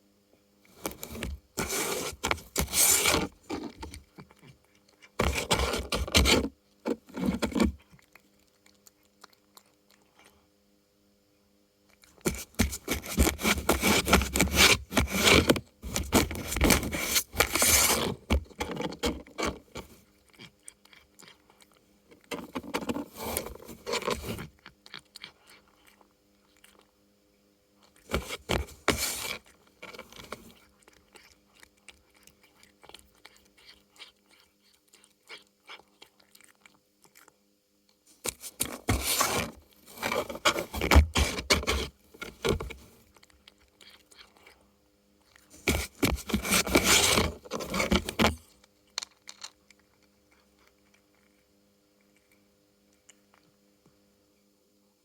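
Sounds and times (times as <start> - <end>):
faint steady hum: 0.0 - 55.0
cats scratching and crunching cardboard: 0.7 - 8.0, 12.2 - 25.9, 28.0 - 36.4, 38.1 - 43.1, 45.5 - 48.5.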